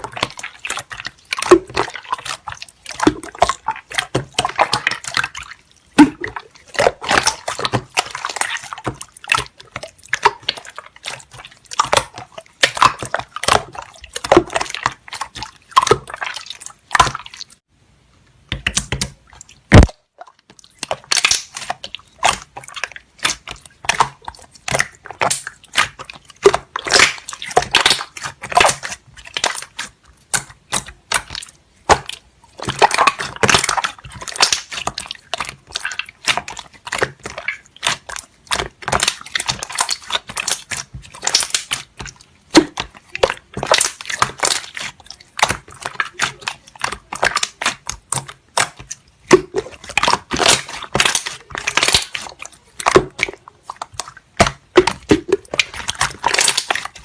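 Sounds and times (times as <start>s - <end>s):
slime crackling and popping: 18.6s - 57.0s.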